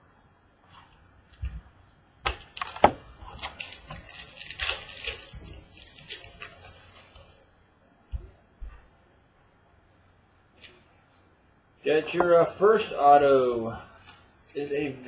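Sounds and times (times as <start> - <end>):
packaging crinkling and rustling: 2.3 - 7.3.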